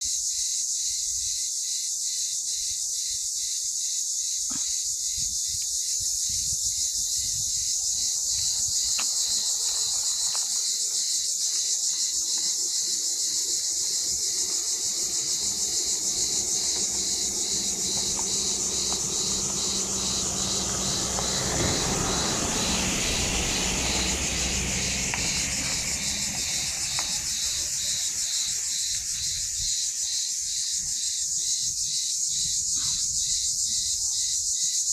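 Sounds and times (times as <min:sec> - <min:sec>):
high-pitched chirring chorus: 0:07.8 - 0:30.1.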